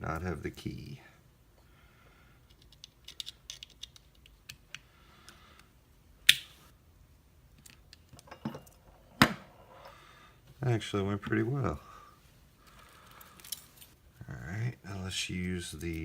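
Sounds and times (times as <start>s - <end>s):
small metallic clicks and rattles: 2.4s - 4.8s.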